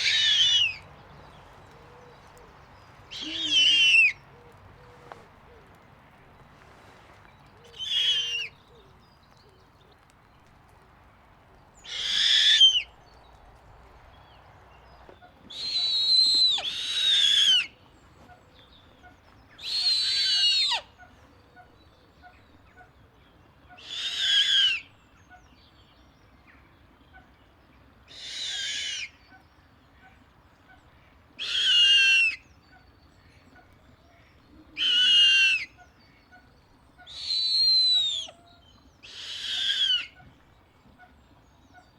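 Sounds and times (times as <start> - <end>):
owl screeching: 0.0 - 0.8, 3.1 - 4.2, 7.8 - 8.5, 11.8 - 12.9, 15.5 - 17.7, 19.6 - 20.9, 23.8 - 24.9, 28.1 - 29.2, 31.4 - 32.4, 34.8 - 35.8, 37.0 - 38.4, 39.0 - 40.2.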